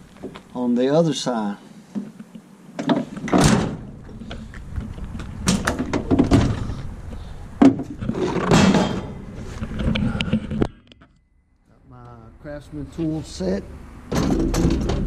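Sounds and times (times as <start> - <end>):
tools knocking and clunking: 14.1 - 15.0.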